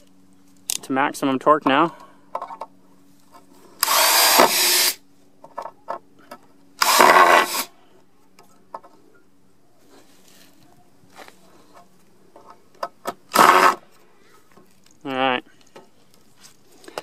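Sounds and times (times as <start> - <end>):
cordless drill driving screw: 3.8 - 5.0, 6.8 - 7.7, 13.3 - 13.8.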